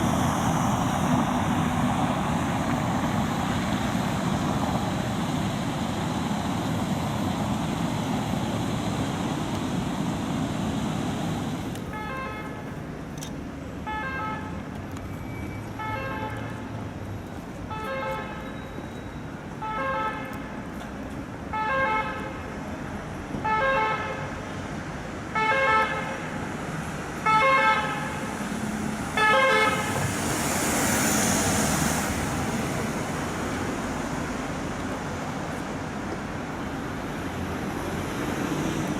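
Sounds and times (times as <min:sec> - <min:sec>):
ambulance passing by: 0:00.0 - 0:12.7, 0:27.2 - 0:38.9
road traffic noise: 0:00.0 - 0:38.9
ambulance siren: 0:29.2 - 0:30.0.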